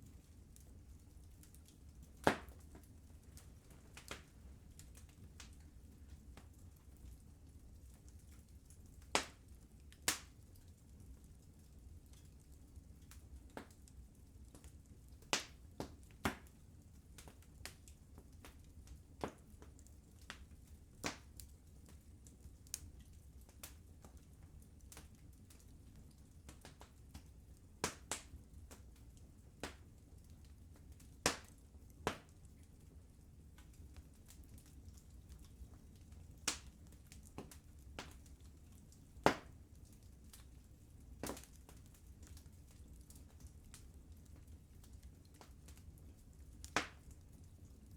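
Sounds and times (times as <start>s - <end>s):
wood fire crackling: 0.0s - 47.9s
sharp pops of fire: 2.2s - 2.7s, 9.1s - 9.4s, 15.2s - 16.5s, 27.8s - 28.3s, 31.2s - 32.3s, 39.2s - 39.6s, 41.2s - 41.6s, 46.7s - 47.0s.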